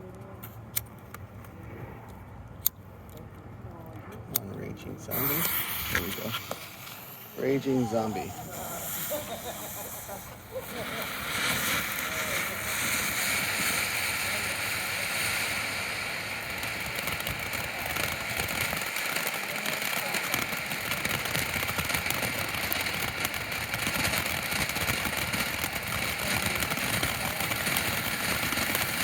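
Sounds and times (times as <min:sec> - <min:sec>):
fireworks fountain hissing and crackling: 0:04.3 - 0:29.0.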